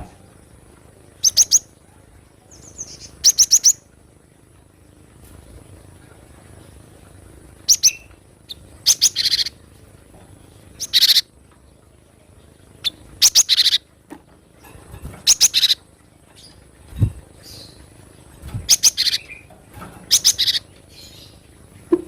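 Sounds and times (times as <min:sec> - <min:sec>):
bird chirping: 0:01.2 - 0:01.7, 0:02.5 - 0:03.9, 0:07.6 - 0:09.6, 0:10.8 - 0:11.3, 0:12.8 - 0:13.8, 0:15.2 - 0:16.6, 0:18.7 - 0:19.5, 0:20.1 - 0:22.0.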